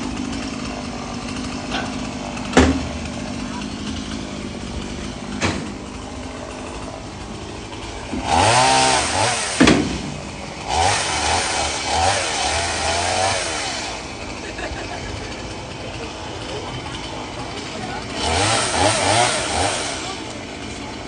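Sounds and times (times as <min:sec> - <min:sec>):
chainsaw revving: 0:00.0 - 0:21.0
sharp knock: 0:02.5 - 0:02.9.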